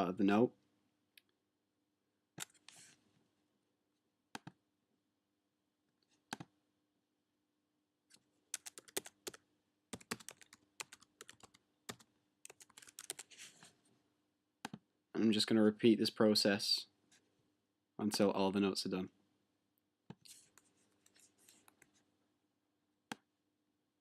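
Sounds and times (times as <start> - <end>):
keyboard typing: 2.4 - 2.8, 8.5 - 13.4.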